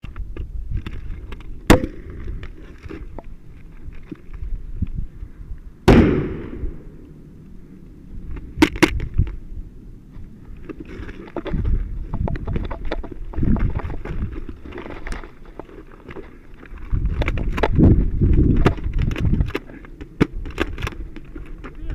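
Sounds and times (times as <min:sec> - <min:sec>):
low rumbling wind: 0:00.0 - 0:21.9
airsoft gun pops and bangs: 0:01.6 - 0:02.2, 0:05.9 - 0:06.6
handling noise: 0:05.9 - 0:21.9.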